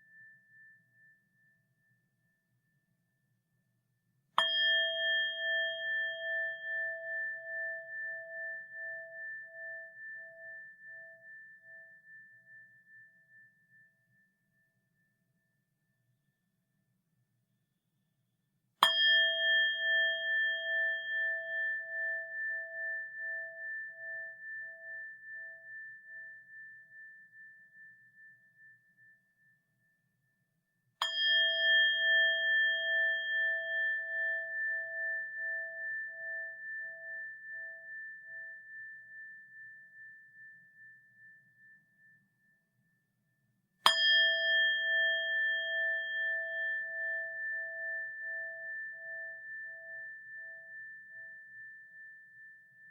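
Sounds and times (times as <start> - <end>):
bowl bell ringing: 4.4 - 14.0, 18.8 - 29.2, 31.0 - 42.3, 43.9 - 52.9.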